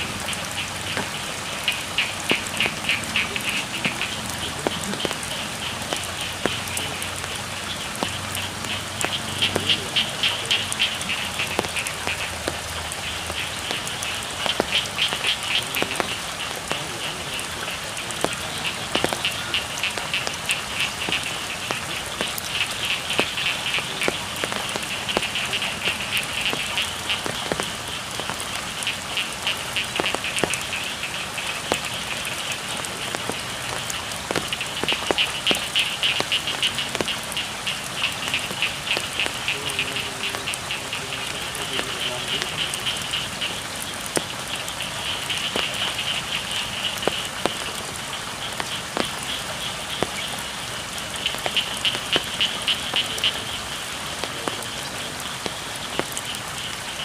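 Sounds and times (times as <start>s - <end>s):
frogs trilling: 0.0s - 57.0s
steady rain: 0.0s - 57.0s
water dripping: 0.0s - 57.0s.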